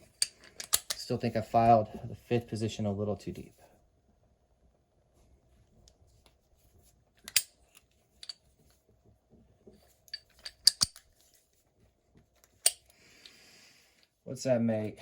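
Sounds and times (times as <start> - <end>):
padlock and key clicking: 0.2 - 1.0, 10.2 - 11.0.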